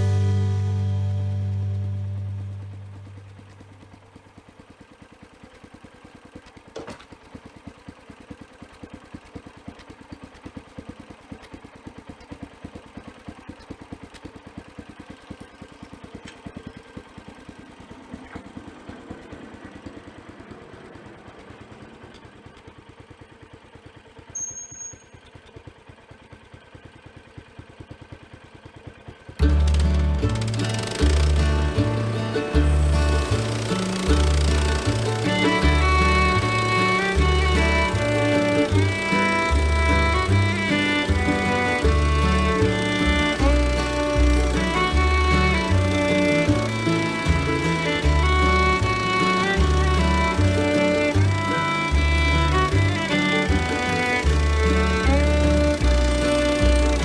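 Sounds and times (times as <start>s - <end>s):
small engine idling: 0.0s - 57.0s
high-pitched squeak: 24.4s - 25.2s.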